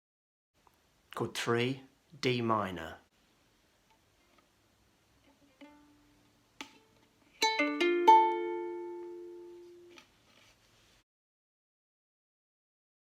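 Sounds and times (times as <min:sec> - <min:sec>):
ukulele chord plucked: 0:05.6 - 0:10.0.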